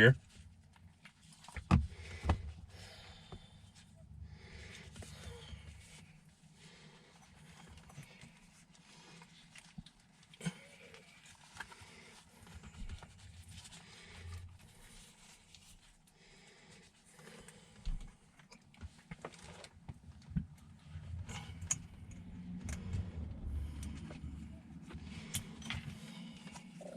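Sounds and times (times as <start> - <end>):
soft rustling: 3.5 - 21.3.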